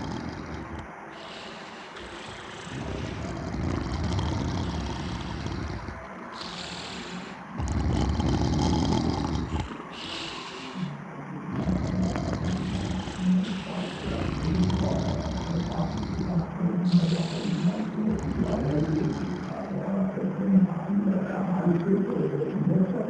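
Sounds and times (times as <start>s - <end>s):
hissing breath: 0.0s - 19.8s
heavy snoring: 0.0s - 20.2s.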